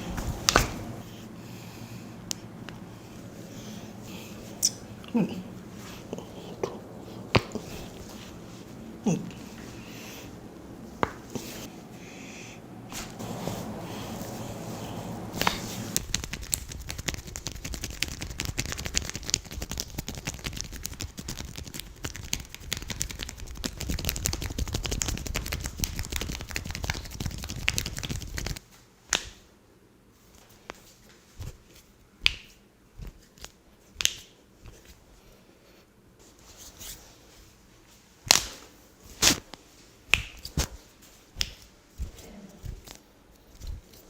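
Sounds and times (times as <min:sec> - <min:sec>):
hands rubbing skin crackling: 0:02.2 - 0:11.9, 0:12.9 - 0:29.3, 0:40.1 - 0:44.0.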